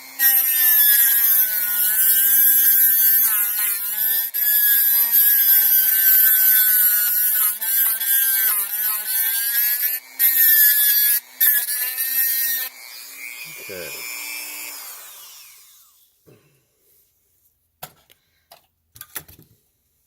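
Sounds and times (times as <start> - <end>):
rotary tool grinding metal: 0.0 - 16.0.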